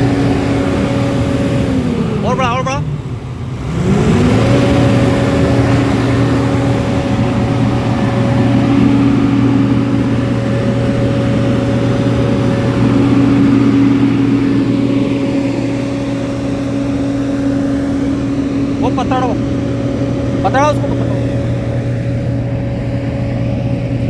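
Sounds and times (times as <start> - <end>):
diesel engine revving: 0.0 - 24.0.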